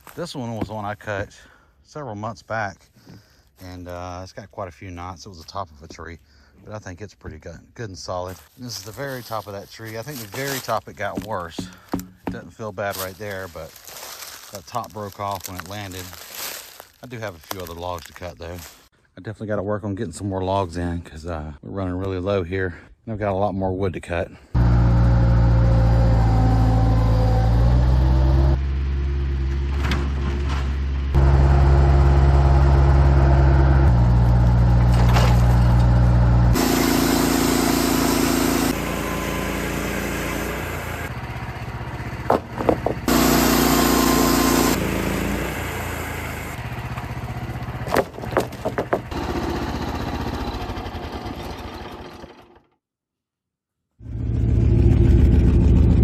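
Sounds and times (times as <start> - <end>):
sharp knocks: 11.2 - 12.5, 42.3 - 43.1, 47.9 - 49.2
engines and machinery running: 24.6 - 52.7, 54.0 - 56.0.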